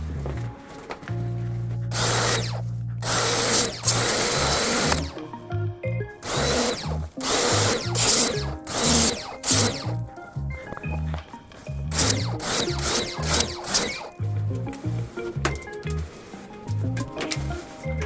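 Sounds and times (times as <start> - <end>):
background music with bass line: 0.0 - 18.0
cordless drill running: 1.9 - 5.2, 6.2 - 10.0, 11.8 - 14.2.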